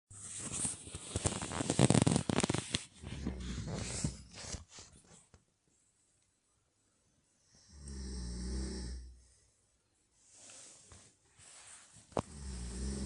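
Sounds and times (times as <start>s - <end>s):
person snoring loudly: 7.6s - 9.2s, 12.2s - 13.0s.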